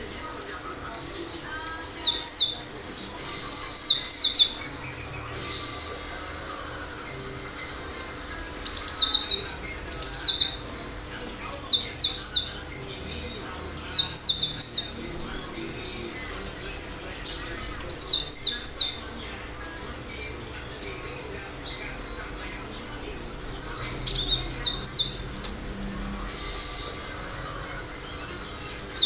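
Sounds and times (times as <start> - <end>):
bird whistling song: 1.6 - 15.4, 17.0 - 19.2, 23.9 - 29.0.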